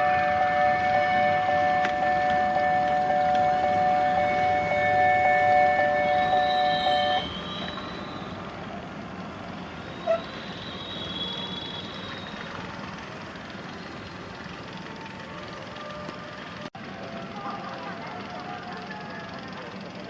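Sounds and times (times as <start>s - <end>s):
two-tone crossing alarm: 0.0s - 8.7s, 9.6s - 16.7s
outdoor background hum: 0.0s - 20.0s.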